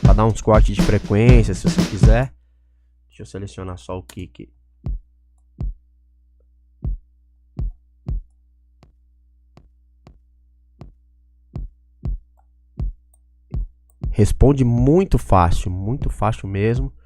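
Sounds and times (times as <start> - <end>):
kick drum hits: 5.6 - 5.8, 6.8 - 7.0, 7.6 - 8.3, 11.6 - 13.0, 13.6 - 14.3.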